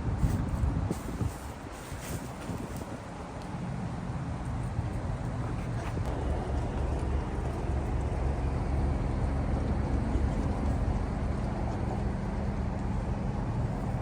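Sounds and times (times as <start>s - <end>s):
vehicle engine idling: 3.8s - 14.0s.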